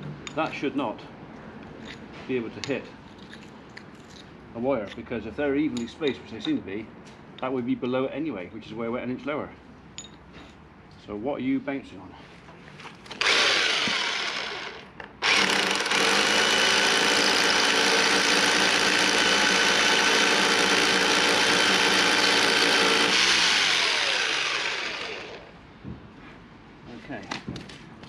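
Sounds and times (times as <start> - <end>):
power tool running: 13.1 - 25.6.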